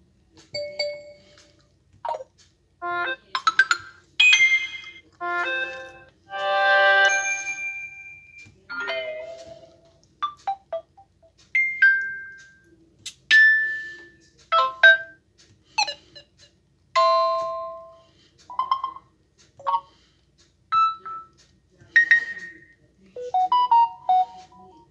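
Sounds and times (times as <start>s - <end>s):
phone notification chimes: 2.8s - 9.6s, 17.0s - 18.0s, 18.6s - 19.0s.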